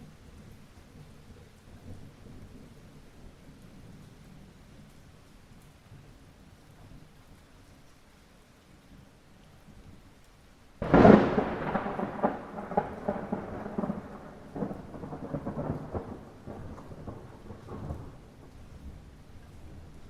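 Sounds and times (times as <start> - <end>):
light rain patter: 0.0 - 20.0
thunderclap with rumble: 10.8 - 20.0.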